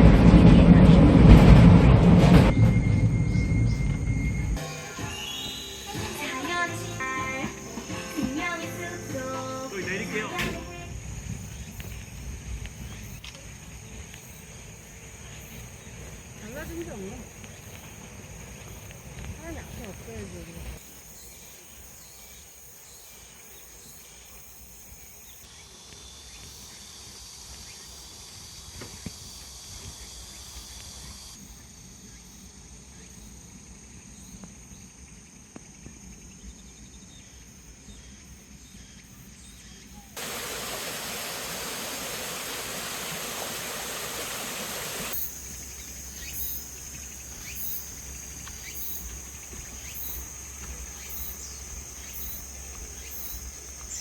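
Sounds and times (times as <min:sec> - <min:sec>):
insects chirring and trilling: 0:02.8 - 0:54.0
even rushing noise: 0:40.2 - 0:47.2.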